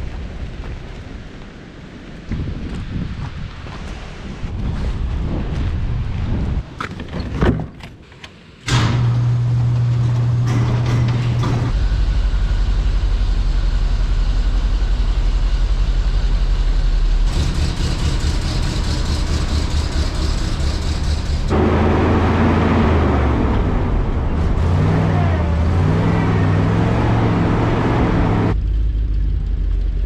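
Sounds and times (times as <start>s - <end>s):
engine running: 8.6s - 30.0s.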